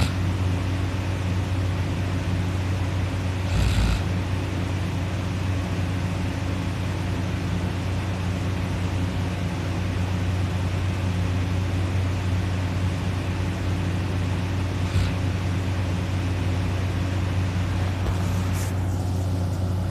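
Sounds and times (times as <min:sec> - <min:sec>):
steady low hum: 0:00.0 - 0:19.9
short rustle: 0:18.1 - 0:19.9.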